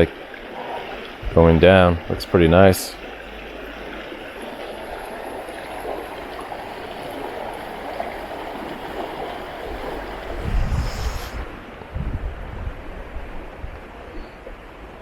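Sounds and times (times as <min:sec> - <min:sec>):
wind buffeting microphone: 0:07.8 - 0:15.0.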